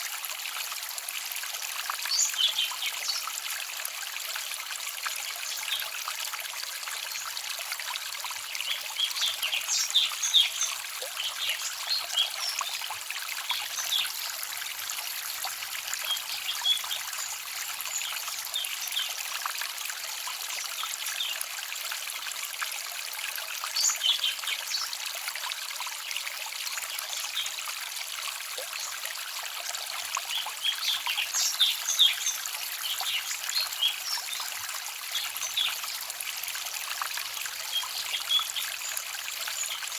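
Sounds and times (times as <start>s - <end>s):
stream trickling and babbling: 0.0s - 39.9s
small birds chirping: 8.6s - 14.4s, 16.0s - 19.2s, 30.2s - 34.5s, 37.7s - 39.9s.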